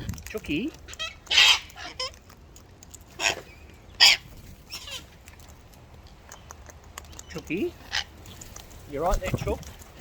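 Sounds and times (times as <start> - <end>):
parrots screeching: 0.9 - 2.2, 3.2 - 5.2, 7.8 - 8.2.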